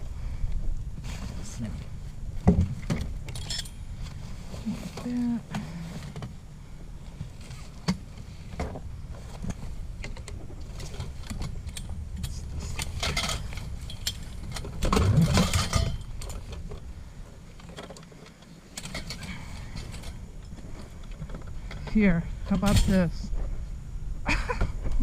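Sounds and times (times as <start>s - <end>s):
metal scraping and rustling: 1.0s - 6.4s, 7.0s - 23.6s
scrap metal clinking and rattling: 2.6s - 6.3s, 7.1s - 23.2s.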